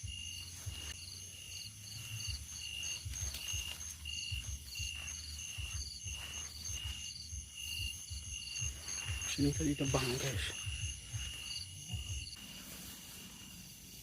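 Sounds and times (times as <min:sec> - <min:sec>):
insects chirping: 0:00.0 - 0:14.0
pulsed insect trills: 0:00.0 - 0:14.0.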